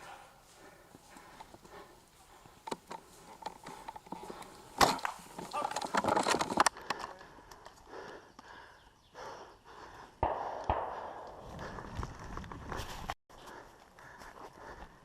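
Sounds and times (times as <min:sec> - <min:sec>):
dry twigs and leaves crackling: 0:00.9 - 0:08.5.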